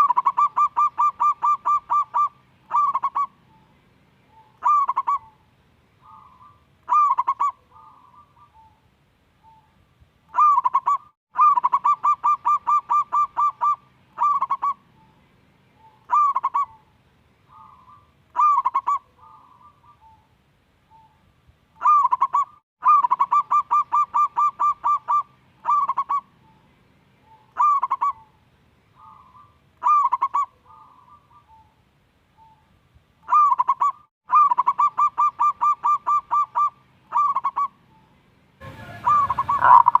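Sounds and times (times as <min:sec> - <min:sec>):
dove cooing: 0:00.0 - 0:03.6, 0:04.3 - 0:05.4, 0:06.0 - 0:08.8, 0:10.3 - 0:15.2, 0:15.8 - 0:16.9, 0:17.5 - 0:20.3, 0:21.8 - 0:26.6, 0:27.2 - 0:28.4, 0:29.0 - 0:31.8, 0:33.2 - 0:40.0.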